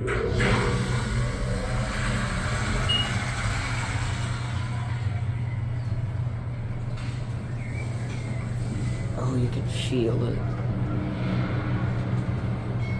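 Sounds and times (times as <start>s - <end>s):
loud rushing noise: 0.0s - 5.7s, 10.7s - 12.9s
elevator low hum: 0.0s - 12.9s.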